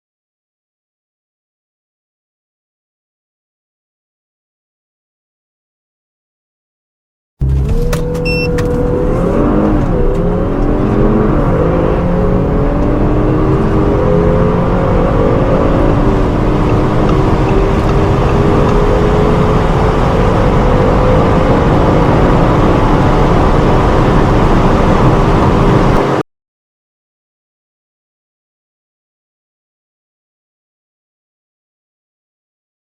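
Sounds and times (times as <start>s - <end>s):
car engine accelerating hard: 7.4s - 26.2s.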